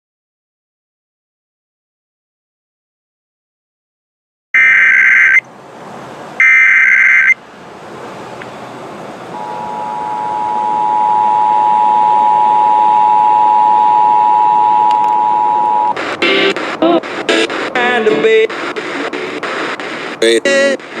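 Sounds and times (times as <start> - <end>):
shrill digital data tones: 4.6 - 5.5, 6.4 - 7.4, 9.3 - 17.6
two-tone alert signal: 9.3 - 16.6
radio hiss: 15.1 - 21.0.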